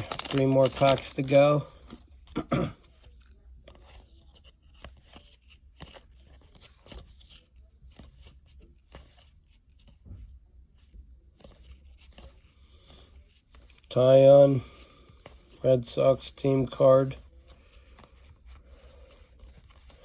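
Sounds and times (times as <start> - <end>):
wrapper crinkling and tearing: 0.0 - 1.7
cards rustling and clicking: 0.0 - 10.0, 10.8 - 20.0.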